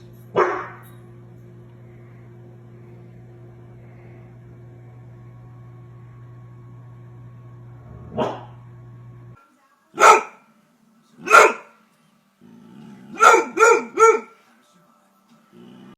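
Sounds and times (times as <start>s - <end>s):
dog barking: 0.4s - 0.8s, 8.2s - 8.5s, 10.0s - 10.4s, 11.2s - 11.8s, 13.1s - 14.4s.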